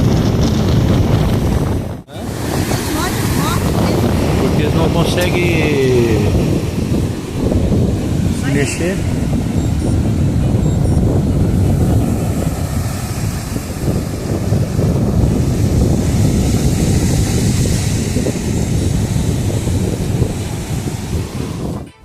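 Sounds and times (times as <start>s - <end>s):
wind buffeting microphone: 0.0s - 22.0s
surf hiss: 2.1s - 9.6s, 12.0s - 21.7s.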